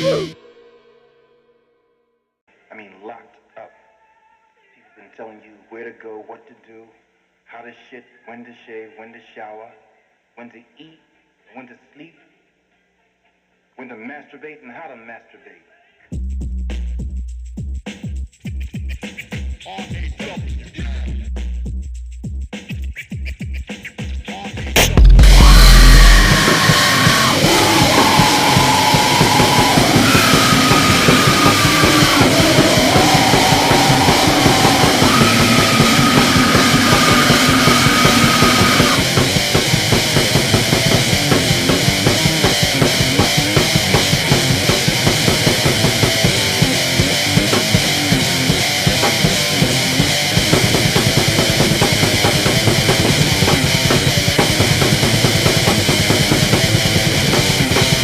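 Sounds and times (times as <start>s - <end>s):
distorted grindcore band: 24.7s - 58.0s
fast dense drumming: 24.8s - 58.0s
held high note stepping pitch: 25.0s - 56.5s.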